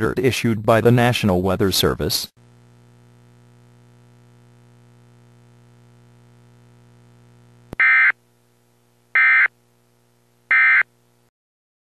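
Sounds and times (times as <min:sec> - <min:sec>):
low steady hum: 0:01.9 - 0:11.3
digital data tone bursts: 0:09.2 - 0:09.5.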